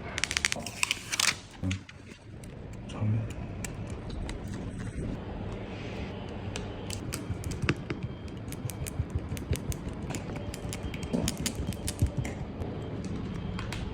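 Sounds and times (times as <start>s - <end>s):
low background hum: 0.0s - 13.9s
small hard objects clicking: 8.4s - 12.4s.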